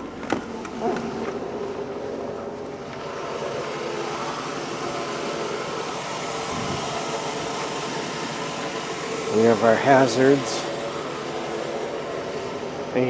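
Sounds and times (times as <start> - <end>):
car engine idling: 0.0 - 13.0.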